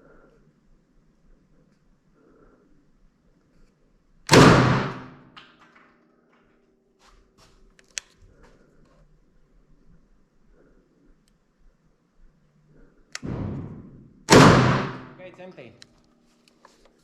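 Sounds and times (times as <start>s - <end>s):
loud gunshot echoing: 4.3s - 5.2s, 13.2s - 15.2s
gun handling clicks: 7.8s - 8.2s.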